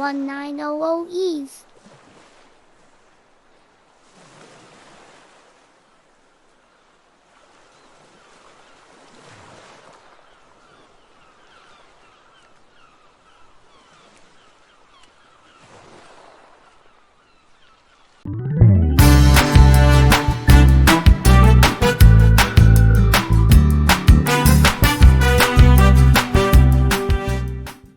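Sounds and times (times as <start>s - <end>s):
ocean waves washing in: 1.4s - 6.6s, 18.2s - 22.6s
music: 18.4s - 27.9s.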